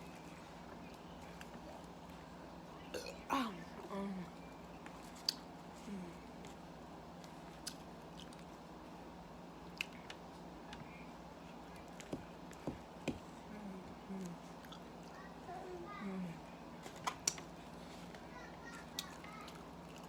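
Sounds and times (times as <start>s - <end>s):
wet mouth clicks and smacks: 5.2s - 5.4s.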